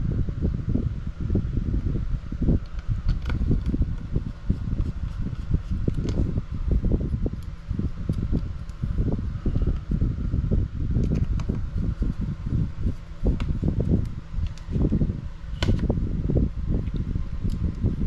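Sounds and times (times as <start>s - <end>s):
handling rumble near microphone: 0.0s - 18.0s.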